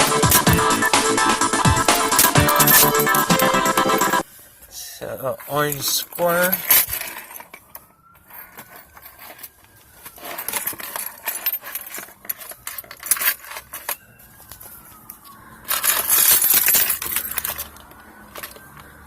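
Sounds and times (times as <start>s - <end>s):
key clicking and rattling in slot: 2.0s - 3.6s
keys jangling: 2.0s - 3.7s, 6.4s - 14.0s, 15.6s - 18.8s.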